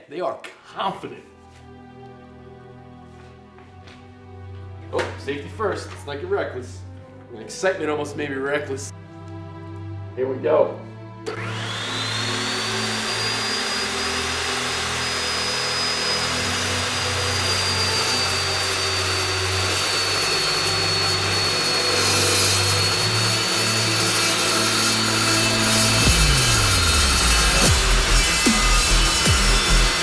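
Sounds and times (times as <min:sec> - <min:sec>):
chop saw motor whine: 0:11.2 - 0:30.0
saw blade cutting steel pipe: 0:11.3 - 0:30.0.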